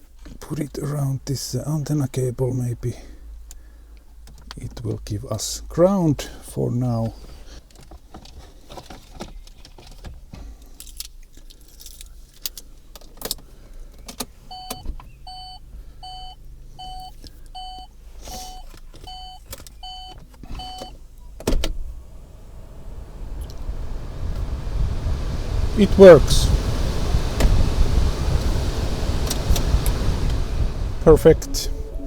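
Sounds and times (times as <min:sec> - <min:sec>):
car warning beeps: 0:14.5 - 0:21.4.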